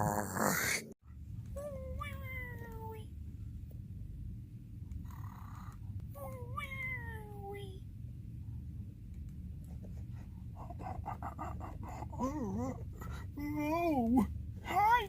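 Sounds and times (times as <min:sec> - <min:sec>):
falling cartoon snore whines: 0:00.0 - 0:00.9
steady low hum: 0:00.8 - 0:15.0.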